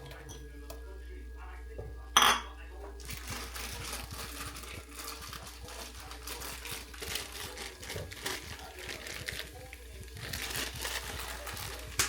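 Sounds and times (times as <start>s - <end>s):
packaging crinkling: 3.0s - 12.0s.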